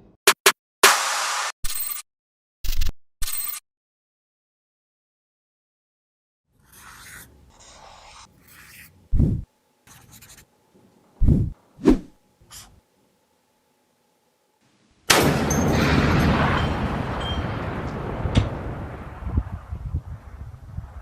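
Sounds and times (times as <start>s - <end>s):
faint scratching and rubbing: 6.6s - 10.5s
rifle shot with rolling rumble: 15.1s - 21.0s.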